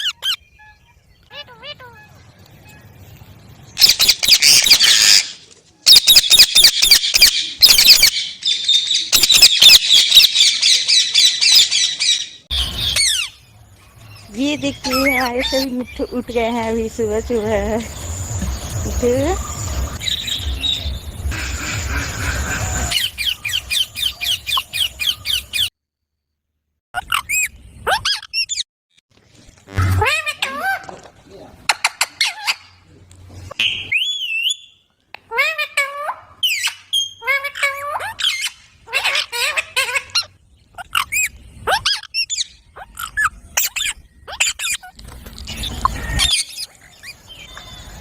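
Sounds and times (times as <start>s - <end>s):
parakeets screeching: 3.8s - 13.4s, 14.6s - 16.2s, 18.0s - 25.6s, 35.3s - 44.9s.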